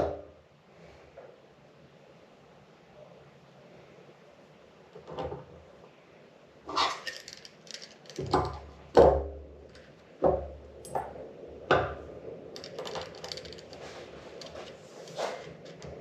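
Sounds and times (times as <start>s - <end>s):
metal tools clattering on workbench: 12.6s - 16.0s.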